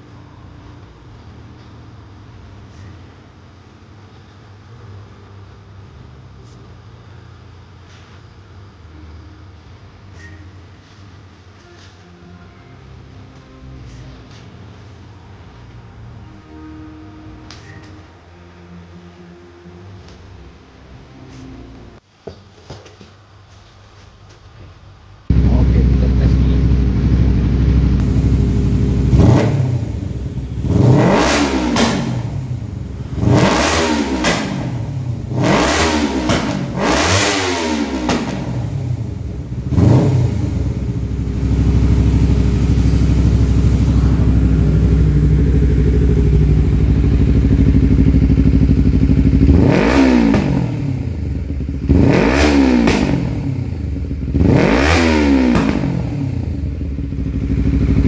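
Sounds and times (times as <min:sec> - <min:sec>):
motorcycle engine idling and revving: 0:25.3 - 0:58.0.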